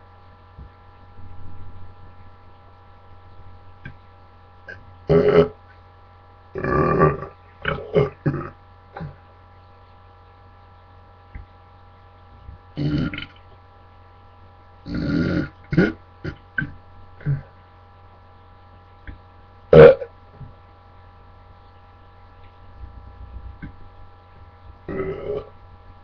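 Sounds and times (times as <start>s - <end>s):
steady low hum: 0.0s - 26.0s
man belching: 4.7s - 5.6s, 6.6s - 9.2s, 12.8s - 13.4s, 14.9s - 17.5s, 19.7s - 20.1s, 24.9s - 25.6s.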